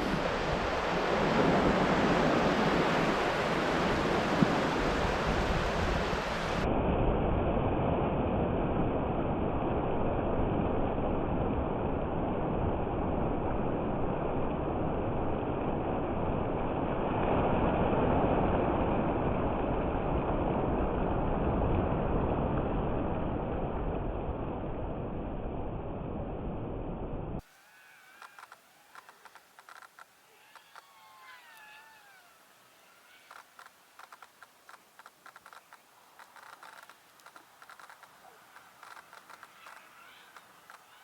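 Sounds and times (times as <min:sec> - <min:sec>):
wind noise on microphone: 0:00.0 - 0:17.0
surf washing on shore: 0:00.0 - 0:24.8, 0:27.4 - 0:41.0.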